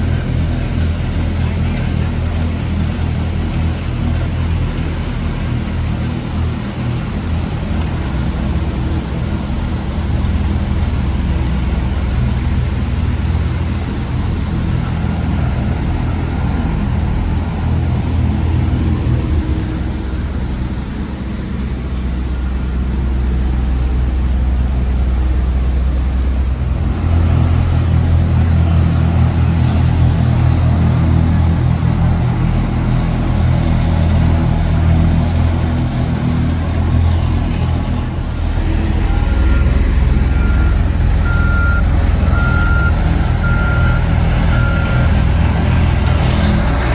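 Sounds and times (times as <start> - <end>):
heavy machinery engines running: 0.0 - 46.9
reversing beeper: 38.2 - 45.7.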